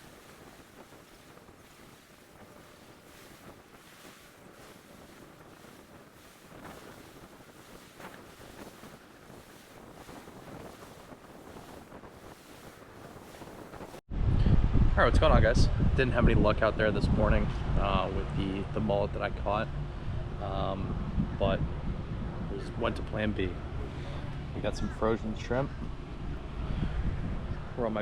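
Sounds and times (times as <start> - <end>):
water lapping: 0.0 - 14.0
wind on microphone: 0.0 - 28.0.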